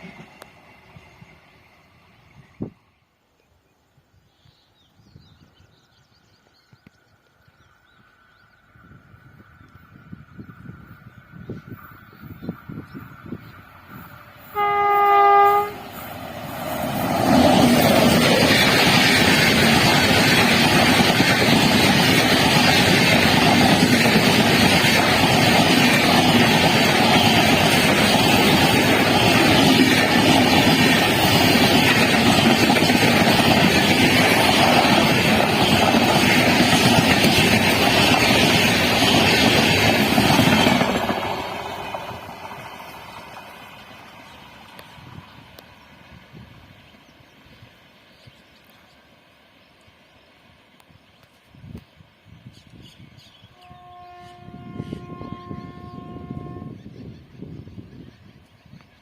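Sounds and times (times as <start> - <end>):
train passing on rails: 0.0 - 59.0
train horn: 14.4 - 16.1, 53.4 - 57.0.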